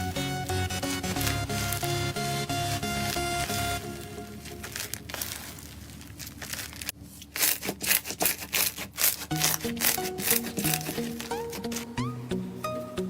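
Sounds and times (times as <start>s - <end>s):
background music: 0.0s - 5.1s, 9.3s - 13.0s
slime crackling and squeezing: 1.2s - 12.0s.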